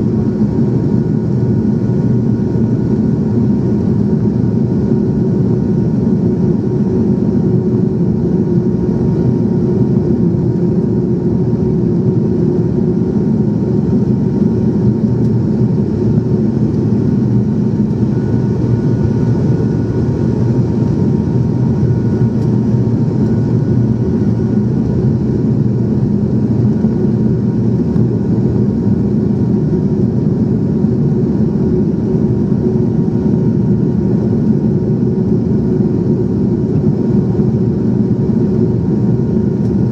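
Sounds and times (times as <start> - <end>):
airliner cabin engine rumble: 0.0 - 39.9.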